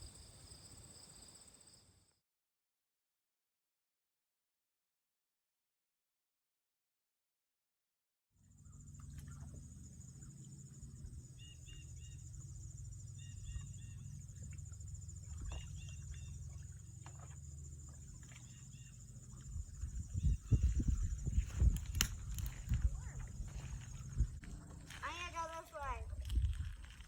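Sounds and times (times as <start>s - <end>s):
steady low rumble: 19.0s - 27.0s.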